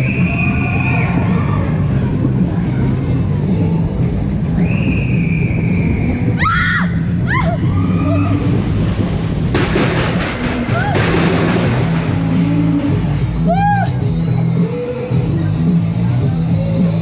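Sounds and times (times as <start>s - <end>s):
music: 0.0s - 17.0s
loud low rumble: 7.0s - 16.0s.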